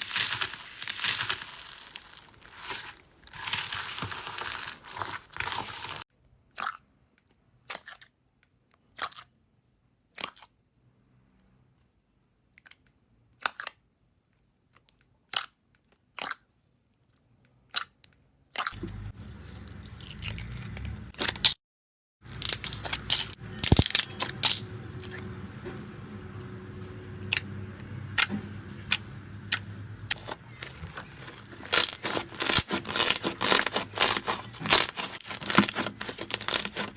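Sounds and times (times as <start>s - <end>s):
slime crackling: 0.0s - 6.0s, 22.3s - 36.9s
slime crackling and popping: 0.0s - 6.0s, 22.3s - 25.2s, 28.9s - 36.9s.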